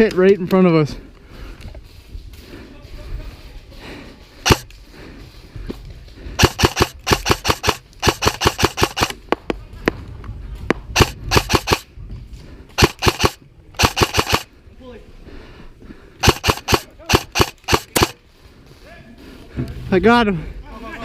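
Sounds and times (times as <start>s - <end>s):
airsoft rifles firing: 4.4s - 4.7s, 6.4s - 9.3s, 11.0s - 11.9s, 12.8s - 14.5s, 16.2s - 18.2s.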